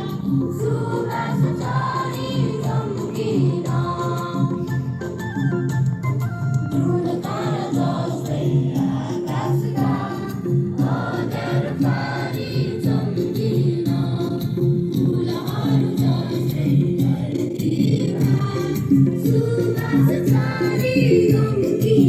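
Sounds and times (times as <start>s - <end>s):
group singing in chorus: 0.0s - 5.2s, 6.7s - 22.0s
instrumental accompaniment: 0.0s - 16.6s.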